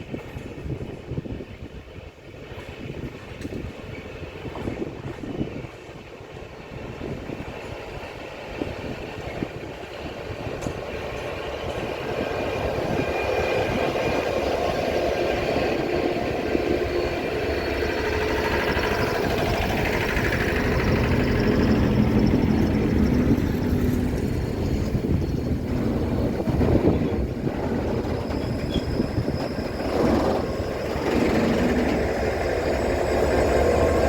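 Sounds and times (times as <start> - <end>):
diesel locomotive engine: 0.0 - 34.0
high whining tones: 12.5 - 34.0.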